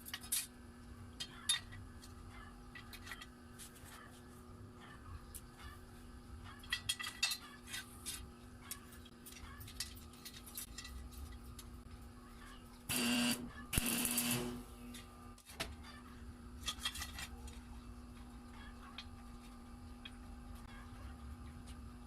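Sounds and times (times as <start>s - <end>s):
small motor bursts: 12.9s - 14.7s.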